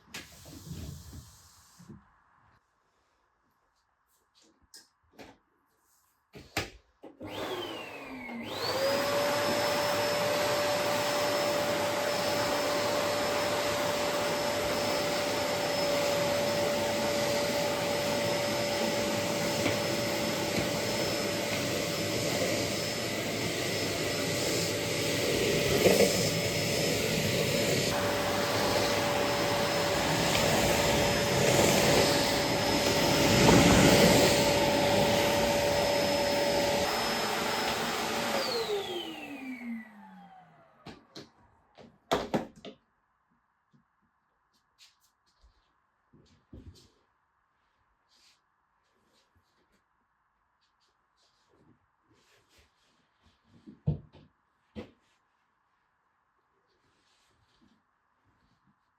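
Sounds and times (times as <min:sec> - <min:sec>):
vacuum cleaner motor whining: 0:07.2 - 0:41.3.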